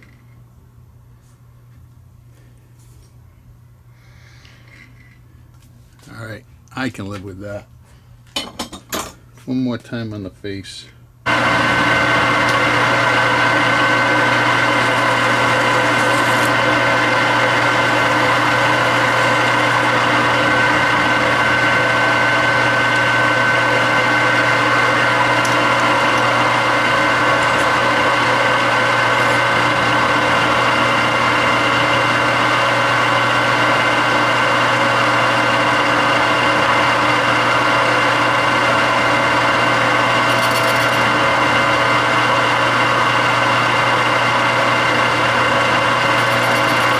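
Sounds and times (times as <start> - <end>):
metal lathe humming and whining: 11.3 - 46.9.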